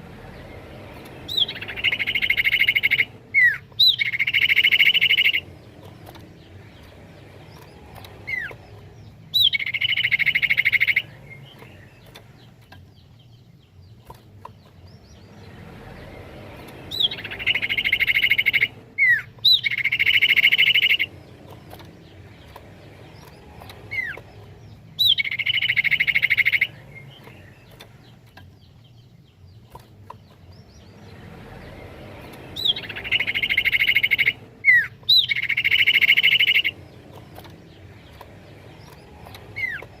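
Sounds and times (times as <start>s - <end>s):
bird whistling and trilling: 1.3s - 5.5s, 8.2s - 8.6s, 9.3s - 11.7s, 16.9s - 21.1s, 25.0s - 27.3s, 32.6s - 36.8s, 38.8s - 39.9s.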